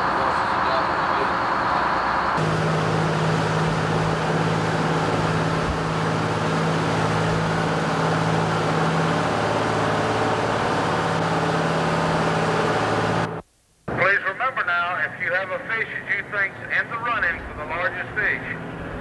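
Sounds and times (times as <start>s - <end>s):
broad rushing noise: 0.0s - 14.2s
boat engine humming: 0.0s - 19.0s.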